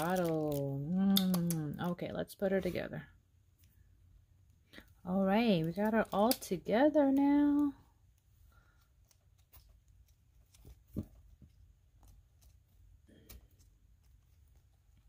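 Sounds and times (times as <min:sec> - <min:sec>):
plastic doll clicks and rustles: 0:00.0 - 0:01.6.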